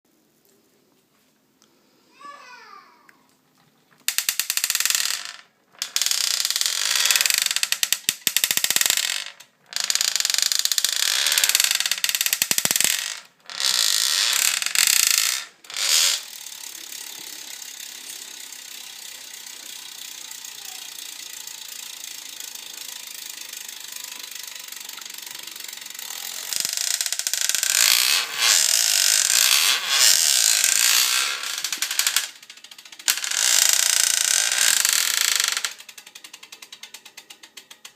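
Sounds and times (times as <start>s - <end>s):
bicycle creak: 4.0s - 37.9s
bicycle drivetrain ratcheting clicks: 4.0s - 37.9s
bicycle drivetrain running: 13.5s - 37.9s.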